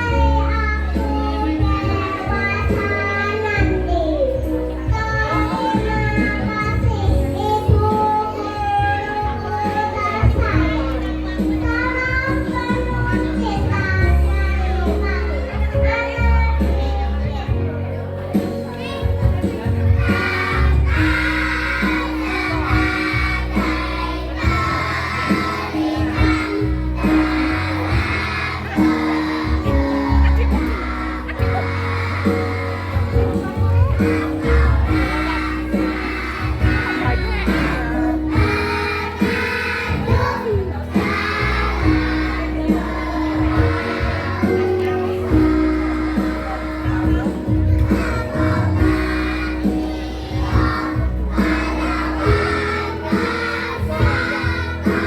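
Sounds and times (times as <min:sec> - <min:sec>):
children's choir singing: 0:00.0 - 0:13.8, 0:18.9 - 0:55.0
backing music with steady beat: 0:17.5 - 0:55.0.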